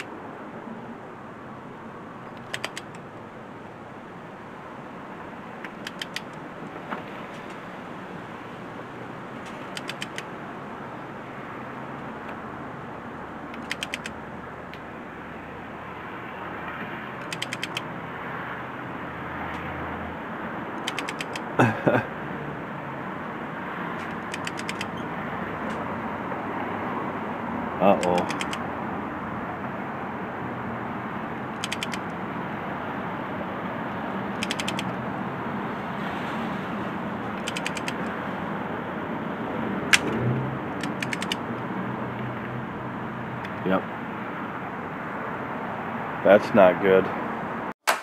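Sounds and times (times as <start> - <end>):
torque wrench ratchet clicks: 17.2 - 17.8.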